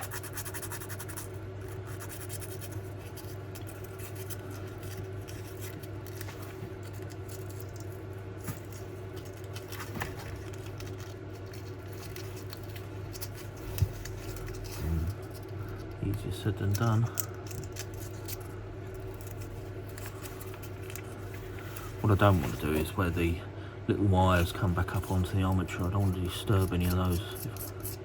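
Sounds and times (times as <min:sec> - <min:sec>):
low steady hum: 0:00.0 - 0:28.0.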